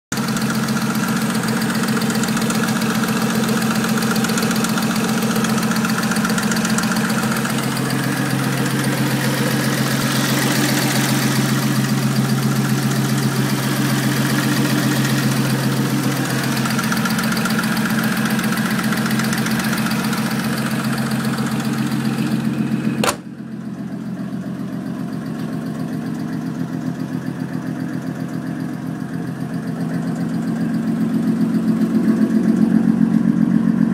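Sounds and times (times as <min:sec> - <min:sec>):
car engine idling: 0:00.1 - 0:33.9
loud rapid engine ticking: 0:00.1 - 0:33.9
sharp click: 0:23.0 - 0:23.3.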